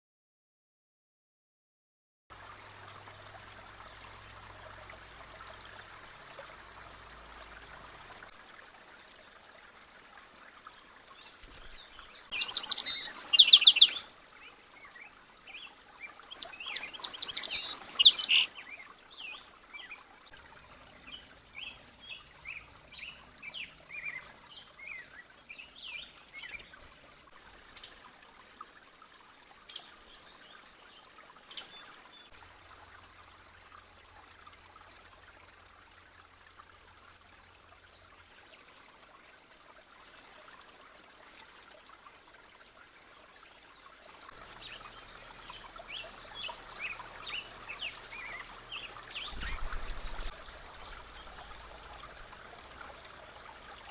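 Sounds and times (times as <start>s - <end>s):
creek trickling: 2.3s - 53.9s
songbirds chirping: 10.4s - 28.1s, 42.6s - 53.9s.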